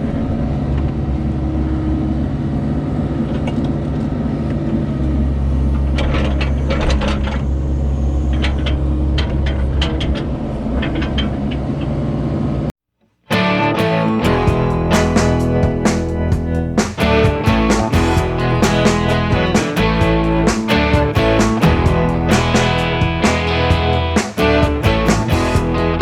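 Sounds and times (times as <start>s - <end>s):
guitar music: 13.3s - 26.0s
heavy machine engine running: 14.1s - 26.0s.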